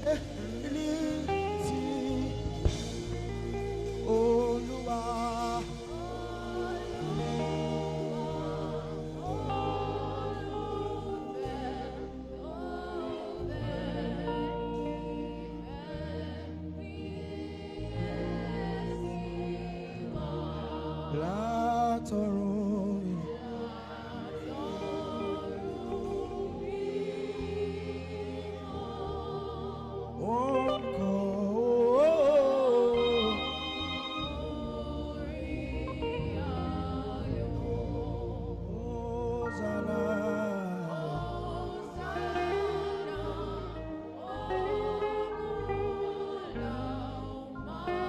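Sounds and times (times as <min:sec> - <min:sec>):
keyboard and bass chords: 0:00.0 - 0:48.0
voices singing along: 0:00.0 - 0:48.0
saxophone melody: 0:32.9 - 0:35.6.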